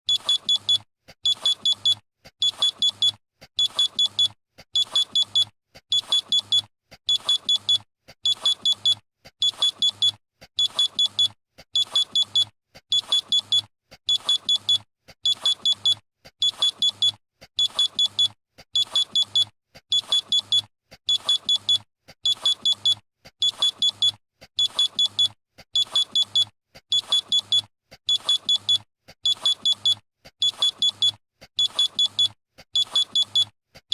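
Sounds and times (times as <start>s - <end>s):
high-pitched alarm beeps: 0.1s - 5.4s.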